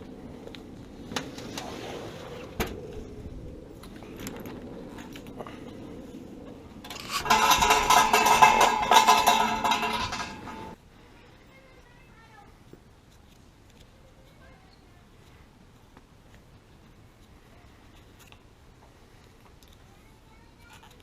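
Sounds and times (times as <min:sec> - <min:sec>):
clicks and knocks: 0:06.8 - 0:10.8
metal pieces jangling and rattling: 0:06.8 - 0:10.8.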